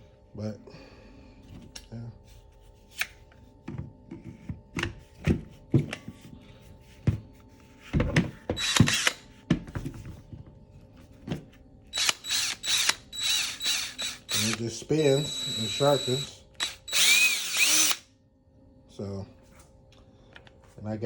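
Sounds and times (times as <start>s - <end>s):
cordless drill spinning: 8.6s - 9.2s, 11.9s - 18.0s.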